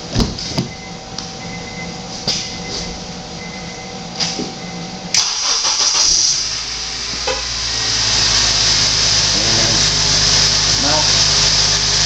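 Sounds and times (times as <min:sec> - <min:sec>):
car engine starting and idling: 0:05.1 - 0:12.0.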